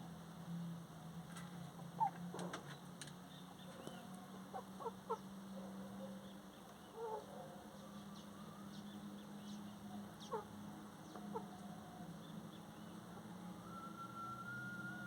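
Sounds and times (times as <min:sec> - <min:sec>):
bird chirps: 0:06.2 - 0:11.6
animal calls: 0:06.8 - 0:07.6, 0:10.2 - 0:10.6, 0:11.2 - 0:11.7.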